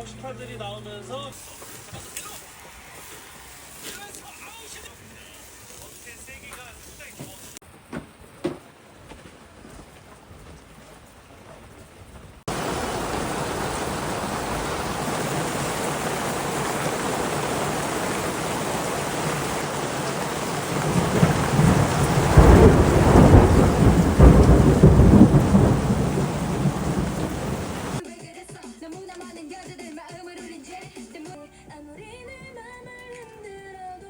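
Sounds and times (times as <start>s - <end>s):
thunder rumble: 7.8s - 28.0s
heavy rain: 8.8s - 28.0s.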